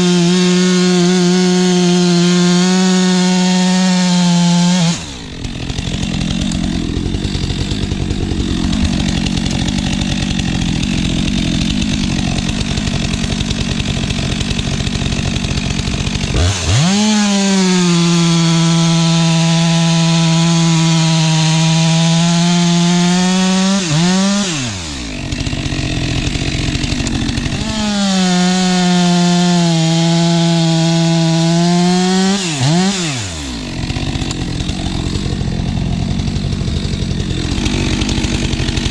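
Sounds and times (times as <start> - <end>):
chainsaw cutting logs: 0.0 - 38.9.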